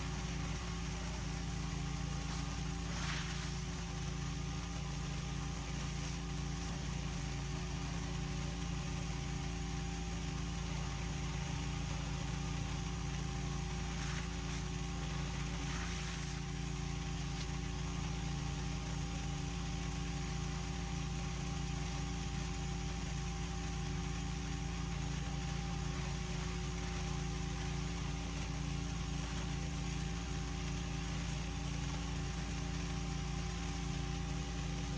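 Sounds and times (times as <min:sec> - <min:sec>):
hiss bursts: 0:00.0 - 0:09.6, 0:10.2 - 0:17.8
pressure washer engine running: 0:00.0 - 0:34.9.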